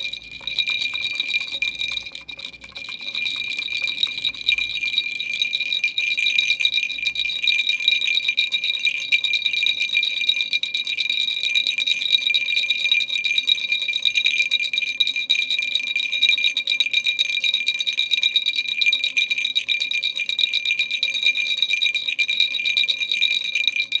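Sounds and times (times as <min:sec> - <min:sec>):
baby rattle bells jingling: 0:00.0 - 0:08.3.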